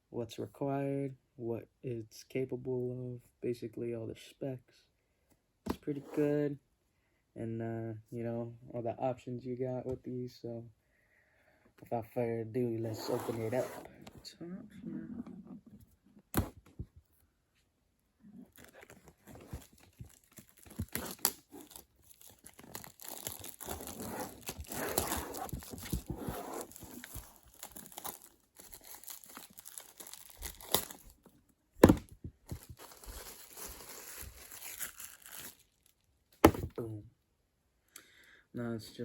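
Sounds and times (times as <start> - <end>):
plastic wrapping tearing and crinkling: 18.5 - 31.2, 31.8 - 36.0.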